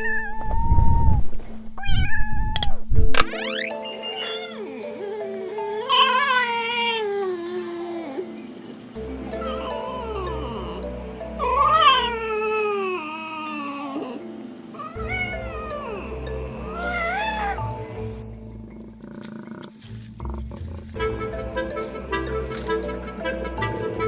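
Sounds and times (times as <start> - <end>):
light background music: 2.7 - 24.0
cat meowing: 3.8 - 8.3, 9.4 - 18.1.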